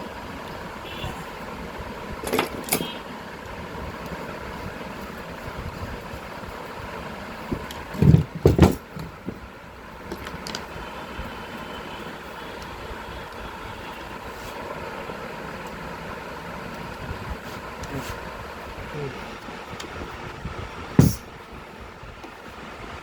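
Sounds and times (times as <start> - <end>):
loud knocks: 7.5 - 9.4, 20.9 - 21.3.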